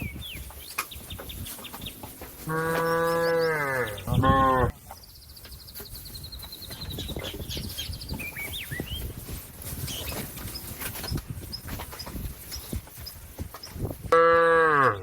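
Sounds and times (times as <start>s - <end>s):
cow mooing: 2.4s - 4.8s, 14.1s - 15.0s.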